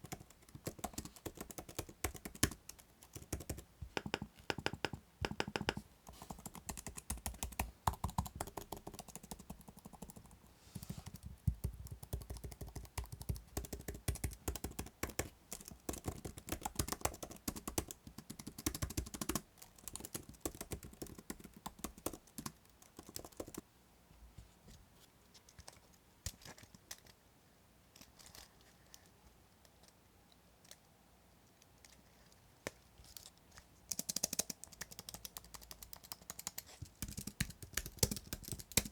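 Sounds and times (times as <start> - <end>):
keyboard typing: 0.0 - 23.6, 33.9 - 38.9.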